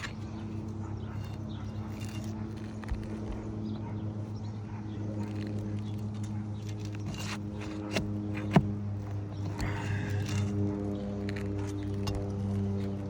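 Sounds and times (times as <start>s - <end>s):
low mechanical hum: 0.0s - 13.0s
light taps and scrapes: 5.2s - 13.0s.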